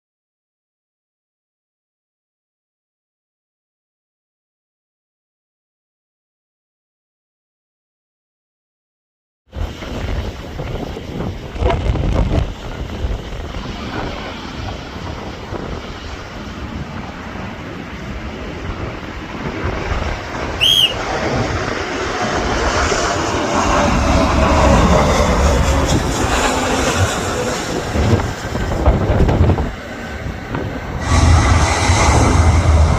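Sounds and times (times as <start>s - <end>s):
jet airliner engines: 9.5s - 32.9s
wind buffeting microphone: 9.5s - 32.9s
short high chirp: 20.6s - 21.0s.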